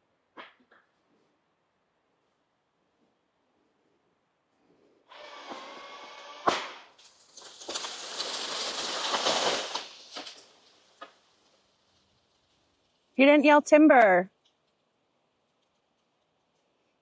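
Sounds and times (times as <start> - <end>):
chainsaw drone: 5.1 - 6.9
tree crashing through branches: 5.2 - 13.1
tree trunk cracking: 5.6 - 13.2.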